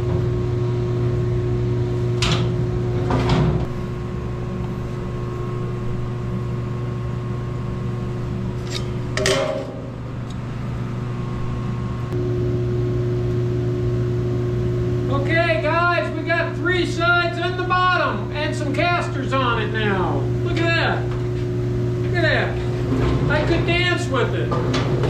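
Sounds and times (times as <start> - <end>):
shop heater humming: 0.0 - 25.0
metal cabinet clunks: 9.2 - 10.2, 24.4 - 25.0.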